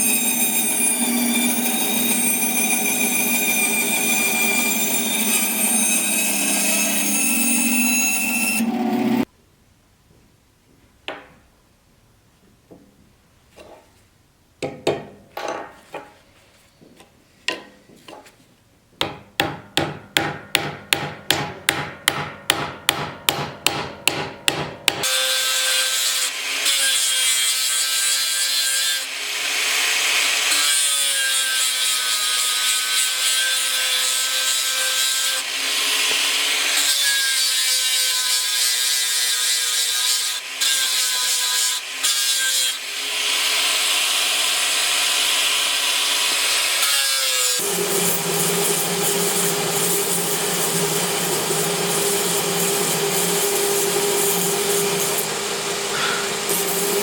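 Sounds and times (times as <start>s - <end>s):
power tool cutting wood: 0.0s - 9.3s, 25.0s - 57.0s.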